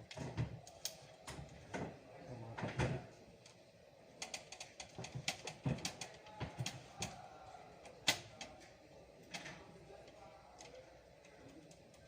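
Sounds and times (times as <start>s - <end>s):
hands clicking computer parts: 4.2s - 7.2s.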